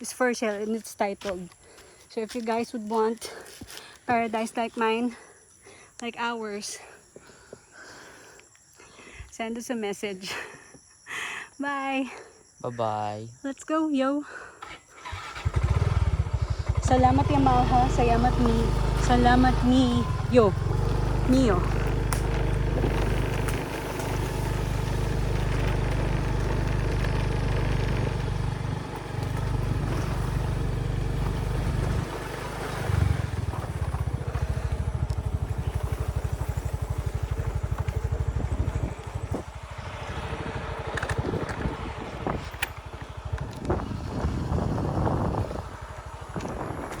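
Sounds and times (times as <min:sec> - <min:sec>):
motorcycle engine rumbling: 0:14.6 - 0:47.0.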